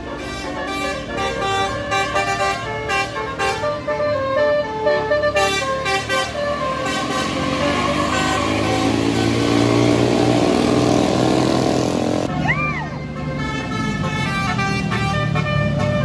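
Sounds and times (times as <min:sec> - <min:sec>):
multi-tone air horn tune: 0:00.0 - 0:10.0, 0:13.2 - 0:16.0
bus engine running: 0:00.0 - 0:16.0.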